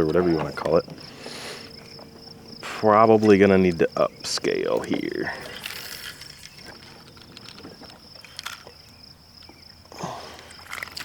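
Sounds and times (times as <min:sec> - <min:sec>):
high-pitched insect chirring: 0:00.0 - 0:09.8
small clicks and knocks: 0:04.7 - 0:11.0.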